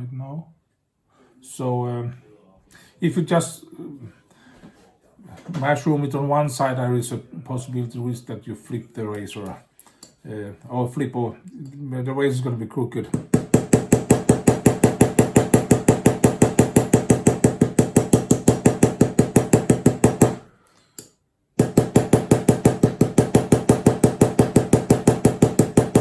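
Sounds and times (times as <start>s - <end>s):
small hammer tapping metal pin: 21.0s - 26.0s.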